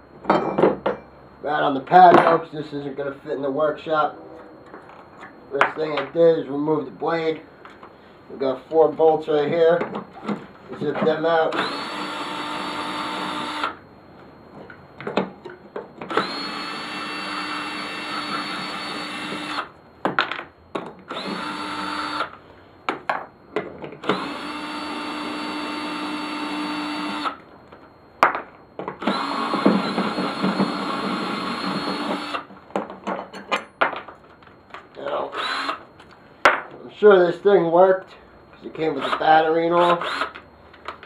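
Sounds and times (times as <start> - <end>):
cordless drill whine: 11.1 - 13.8, 16.0 - 19.8, 21.1 - 22.4, 24.0 - 27.5, 29.0 - 32.5, 35.1 - 36.1, 38.9 - 40.4.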